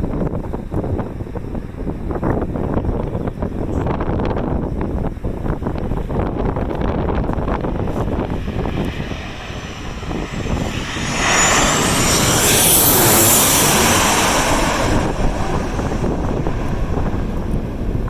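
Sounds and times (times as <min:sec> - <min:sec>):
wind buffeting microphone: 0:00.0 - 0:18.0
airliner passing overhead: 0:06.0 - 0:18.0.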